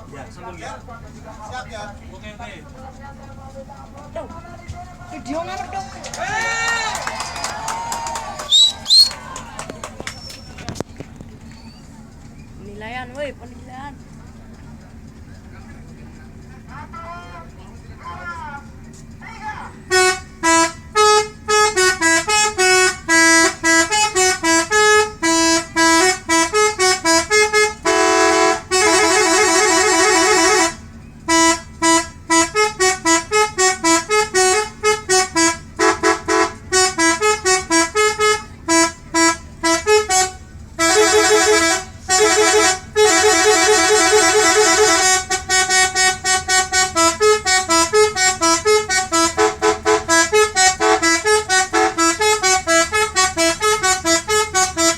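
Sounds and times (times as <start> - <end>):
multi-tone air horn tune: 19.9 - 54.9.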